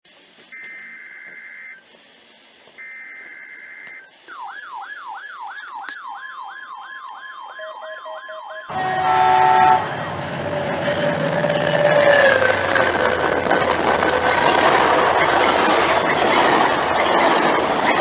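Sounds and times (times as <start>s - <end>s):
noisy steady tones: 0.1s - 18.0s
warbling siren-like alert tone: 4.3s - 18.0s
buzzy data bursts: 8.7s - 18.0s.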